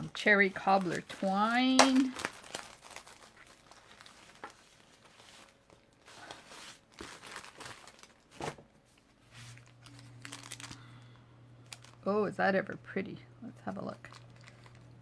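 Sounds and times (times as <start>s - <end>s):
plastic packaging crinkling: 0.0s - 12.3s, 13.6s - 15.0s
low steady hum: 8.8s - 15.0s.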